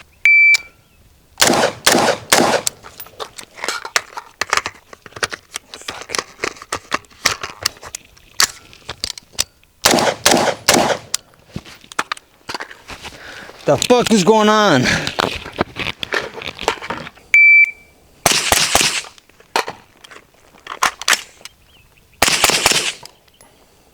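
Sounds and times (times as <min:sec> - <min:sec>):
gunshots: 0:01.4 - 0:02.8, 0:09.8 - 0:11.1, 0:18.2 - 0:19.1, 0:22.2 - 0:23.0.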